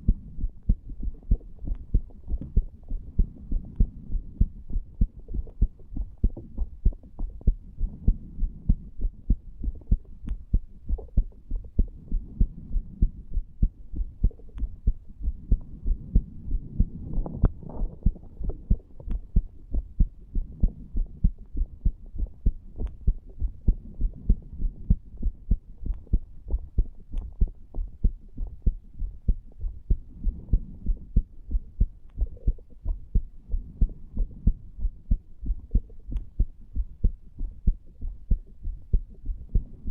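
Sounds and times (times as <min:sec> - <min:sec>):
faint low hum: 0:00.0 - 0:39.9
heartbeat thumps: 0:00.0 - 0:39.9.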